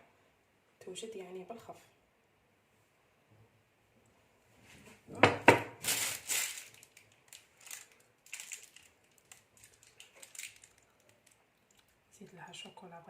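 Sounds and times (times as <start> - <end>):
rustling: 5.8 - 12.0.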